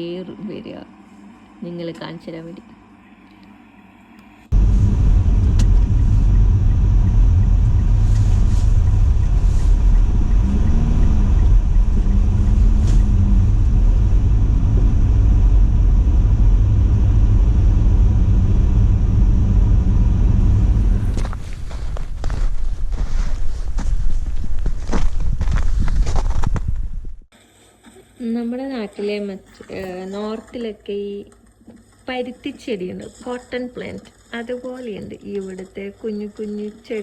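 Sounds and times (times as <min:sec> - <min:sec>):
car driving rumble: 0:04.5 - 0:23.0.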